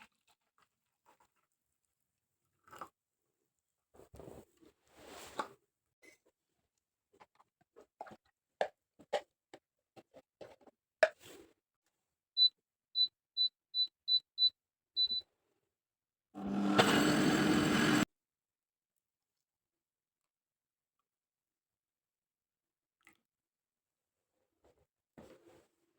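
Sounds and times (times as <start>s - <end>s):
appliance motor running: 16.4s - 18.0s.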